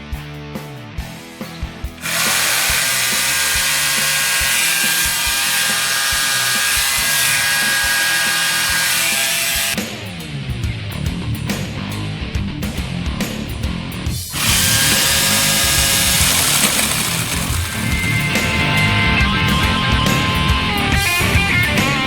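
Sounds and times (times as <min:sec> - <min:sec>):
battery chainsaw running: 0:02.0 - 0:09.8, 0:14.2 - 0:22.0.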